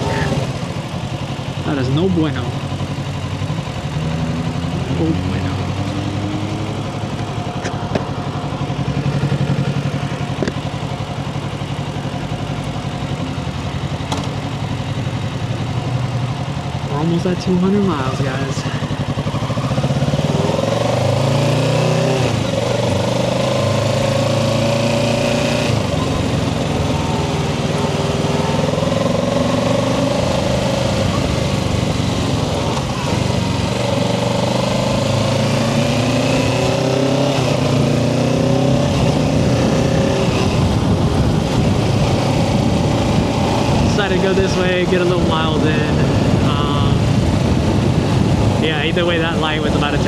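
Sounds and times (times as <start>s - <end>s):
motorcycle engine accelerating: 0.0s - 50.0s
wind noise: 38.7s - 50.0s.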